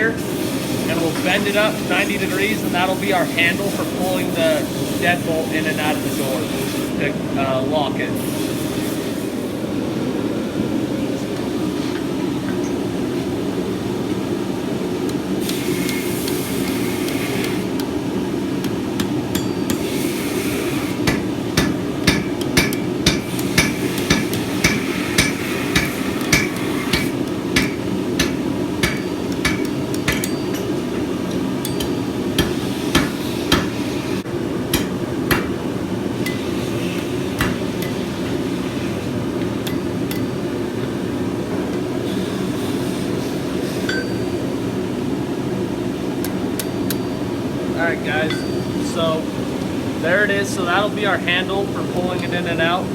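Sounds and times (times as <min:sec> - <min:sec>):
hammer striking steel on anvil: 0:18.6 - 0:33.8, 0:34.7 - 0:35.6, 0:36.2 - 0:38.4, 0:39.6 - 0:40.4, 0:43.8 - 0:44.5, 0:48.2 - 0:48.9.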